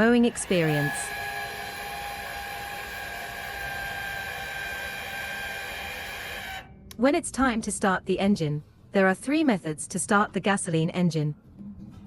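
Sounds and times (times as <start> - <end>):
electric motor whir with whine: 0.0 - 6.7.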